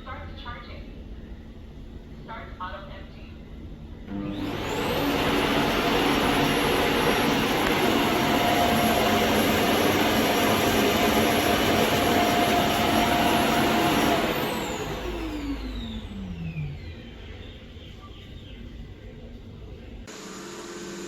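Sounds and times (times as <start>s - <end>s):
suction motor whine: 4.1s - 17.2s.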